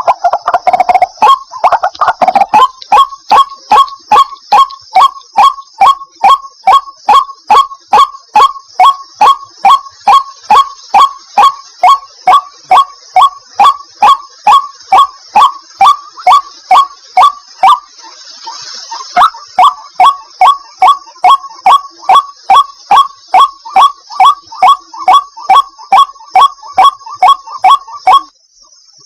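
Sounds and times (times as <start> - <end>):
bird calling: 0.0 - 28.3.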